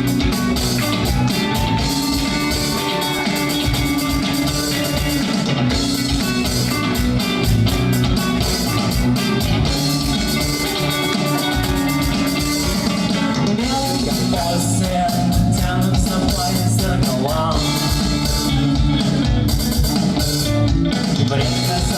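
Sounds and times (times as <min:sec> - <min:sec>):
person singing: 0:00.0 - 0:05.2, 0:10.2 - 0:18.8, 0:21.0 - 0:21.9
drum kit beat: 0:00.0 - 0:21.9
electric guitar: 0:00.0 - 0:21.9.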